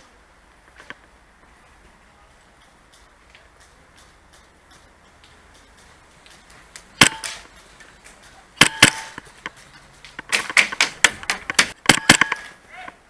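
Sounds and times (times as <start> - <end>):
airsoft guns firing: 7.0 - 7.5, 8.6 - 9.3, 10.2 - 12.6.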